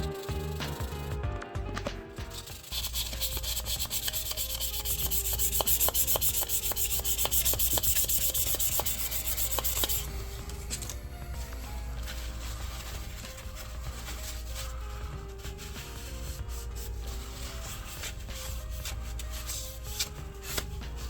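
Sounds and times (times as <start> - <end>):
sandpaper scratching steel blade: 0.0 - 1.1, 2.3 - 10.1.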